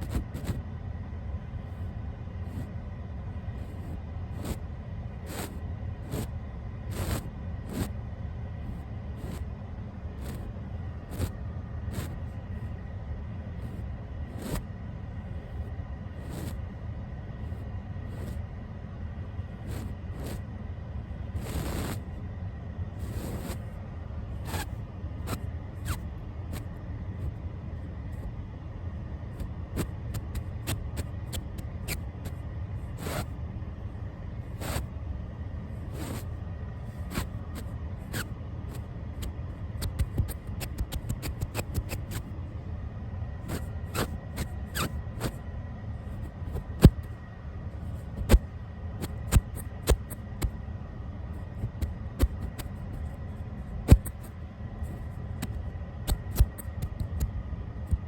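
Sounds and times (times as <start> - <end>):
brush scratching on microphone: 0.0 - 0.6, 3.6 - 4.6, 5.2 - 6.3, 6.9 - 7.9, 9.2 - 9.5, 10.2 - 10.5, 11.1 - 12.2, 13.6 - 14.6, 16.2 - 16.6, 18.1 - 18.4, 19.6 - 20.4, 21.4 - 22.0, 23.0 - 23.6, 29.4 - 33.3, 35.9 - 36.3, 37.0 - 42.3, 43.5 - 45.4, 47.9 - 48.4, 49.0 - 50.5, 51.6 - 53.2, 53.9 - 57.3
clicks and taps: 55.4 - 57.3.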